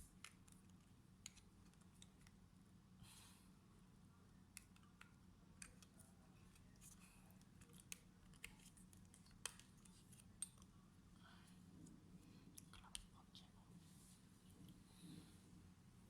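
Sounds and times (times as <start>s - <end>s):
faint low hum: 0.0s - 16.0s
small clicks of handling laptop parts: 0.1s - 2.4s, 4.5s - 10.8s.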